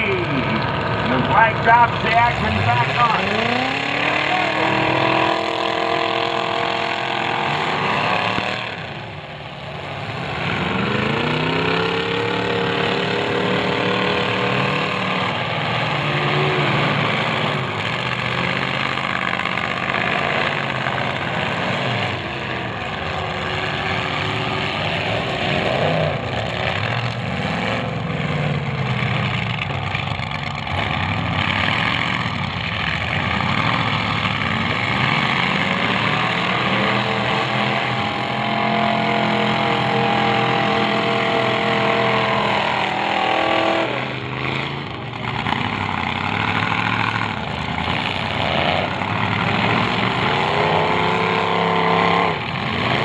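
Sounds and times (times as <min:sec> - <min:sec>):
car engines revving: 0:00.0 - 0:53.0.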